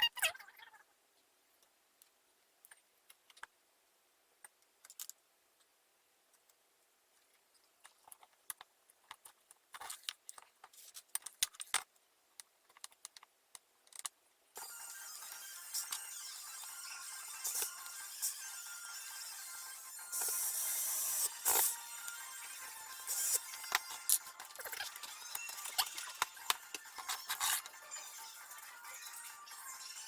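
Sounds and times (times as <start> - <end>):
small hard parts clicking and rattling: 7.3 - 14.7, 15.3 - 30.0.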